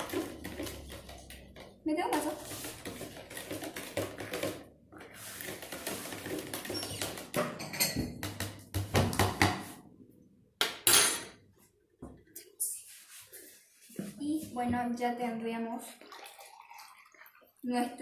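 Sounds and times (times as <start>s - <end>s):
dishes and utensils clinking: 6.6s - 8.2s, 10.6s - 11.4s.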